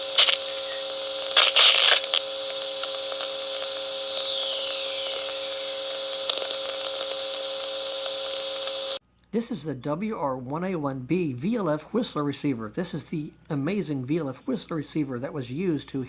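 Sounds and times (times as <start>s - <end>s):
crackles of lightning static: 0.0s - 9.0s
falling radio whistle: 0.0s - 9.0s
steady radio hum: 0.0s - 9.0s.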